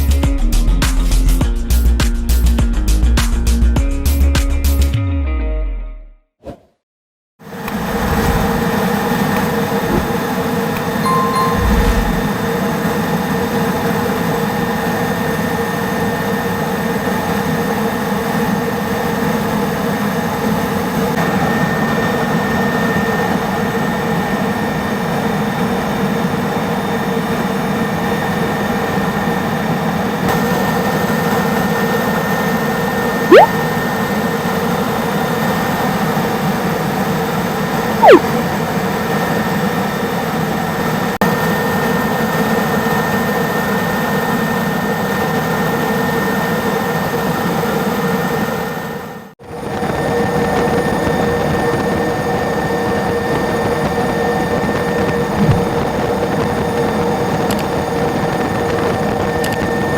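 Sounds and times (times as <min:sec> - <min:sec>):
sharp chirps: 0:11.1 - 0:12.3, 0:33.3 - 0:33.5, 0:38.0 - 0:38.2.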